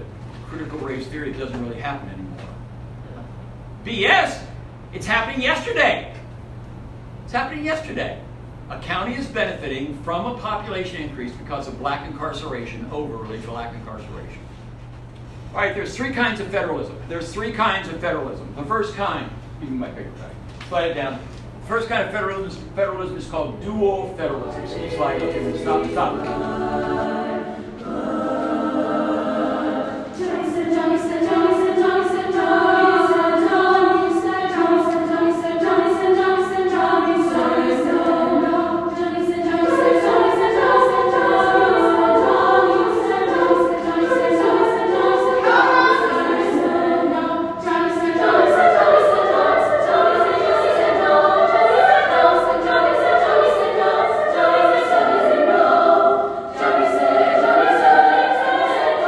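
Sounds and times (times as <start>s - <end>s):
choir singing: 24.0s - 59.0s.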